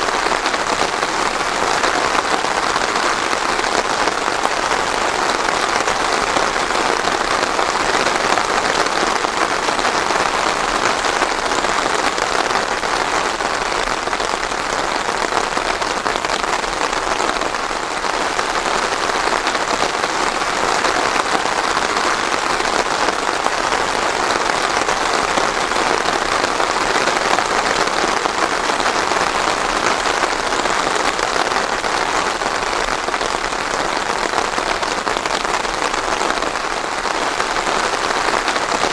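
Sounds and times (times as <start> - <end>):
steady rain patter: 0.0 - 38.9.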